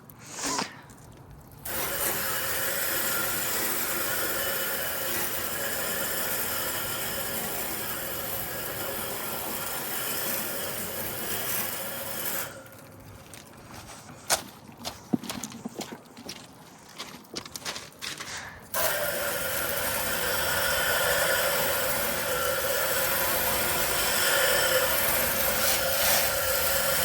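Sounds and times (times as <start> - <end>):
hose nozzle spraying water: 0.0 - 13.0, 18.7 - 27.0.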